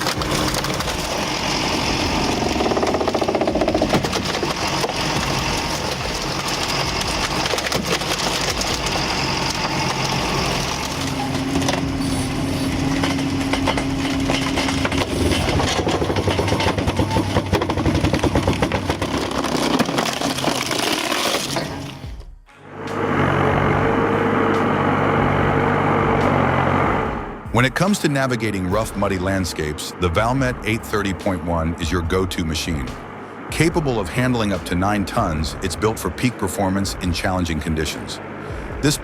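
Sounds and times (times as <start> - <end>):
heavy machine engine under load: 0.0 - 22.1, 22.7 - 39.0
wood crushing and cracking: 0.0 - 22.2
steady whine: 0.0 - 39.0.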